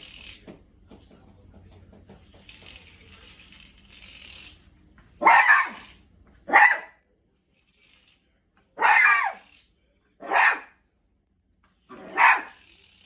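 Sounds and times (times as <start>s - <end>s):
puppy barking: 5.2s - 7.0s, 8.8s - 9.4s, 10.2s - 10.8s, 11.9s - 12.6s.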